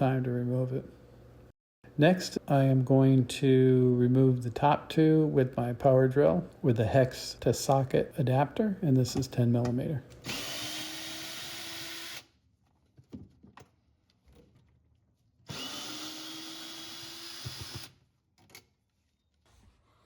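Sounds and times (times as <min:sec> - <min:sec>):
power drill running: 0:10.2 - 0:12.2, 0:15.5 - 0:17.9.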